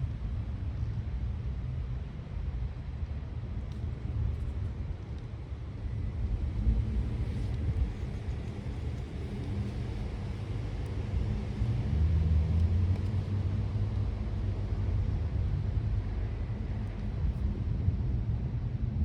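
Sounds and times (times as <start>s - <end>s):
wind: 0.0s - 19.0s
low rumble: 5.8s - 19.0s.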